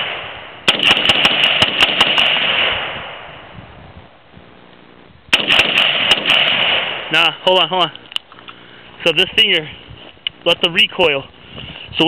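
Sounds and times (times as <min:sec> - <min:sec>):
rapid rifle shots echoing: 0:00.0 - 0:03.1, 0:05.3 - 0:07.4.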